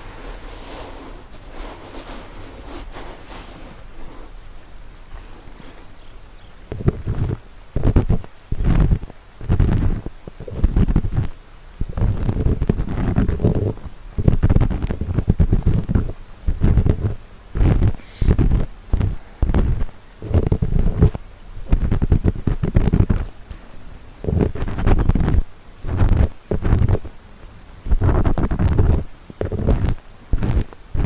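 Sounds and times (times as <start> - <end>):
faint nature ambience: 0.0 - 9.4, 17.1 - 21.8, 22.7 - 28.2
earpick scraping in ear: 6.7 - 11.3, 11.9 - 27.1, 27.9 - 31.0.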